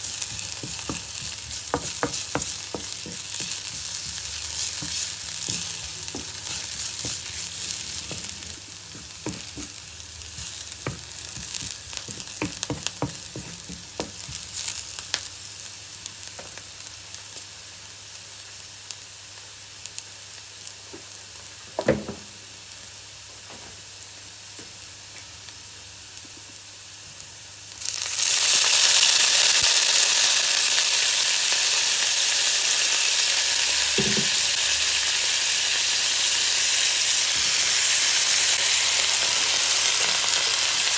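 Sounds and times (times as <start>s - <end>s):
spatula scraping a pan: 0.0s - 14.7s
greens sizzling in a pan: 0.0s - 21.8s, 22.4s - 40.9s
knock: 34.0s - 34.3s.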